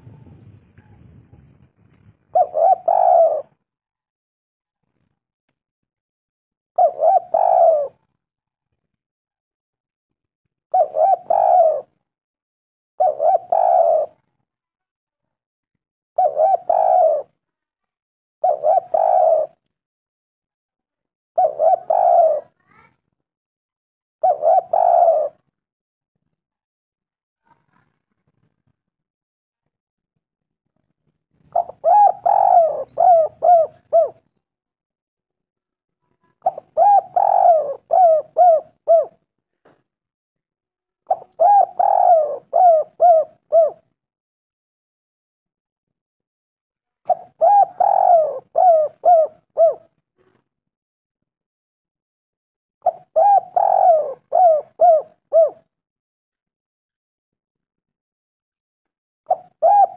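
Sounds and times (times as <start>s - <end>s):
dove cooing: 0.0s - 3.6s, 6.8s - 8.0s, 10.7s - 12.0s, 13.0s - 14.3s, 16.2s - 17.3s, 18.4s - 19.6s, 21.4s - 22.6s, 24.2s - 25.5s, 31.5s - 34.4s, 36.4s - 39.2s, 41.1s - 43.8s, 47.1s - 50.4s, 52.8s - 55.7s, 59.3s - 59.9s.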